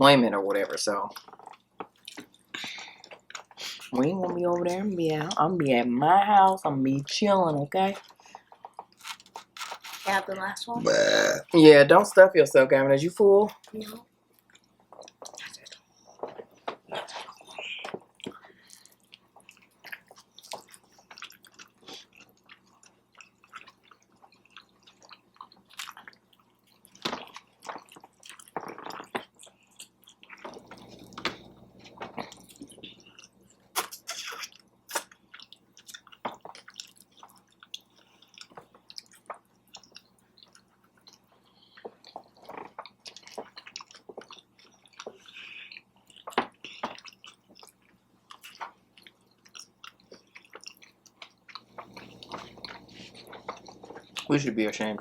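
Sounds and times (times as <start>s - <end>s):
wet chewing and biting: 1.1s - 3.9s, 8.0s - 10.1s, 14.4s - 54.4s
small crunches: 8.6s - 10.1s.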